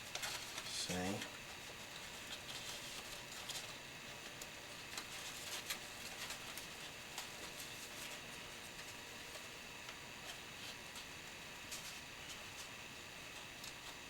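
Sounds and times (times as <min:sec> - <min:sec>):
paper crinkling: 0:00.0 - 0:14.0
small clicks and ticks: 0:13.4 - 0:14.0.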